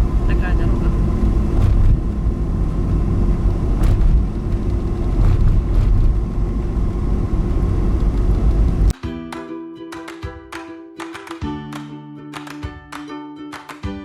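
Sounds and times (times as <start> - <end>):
cars passing: 0.0 - 8.9.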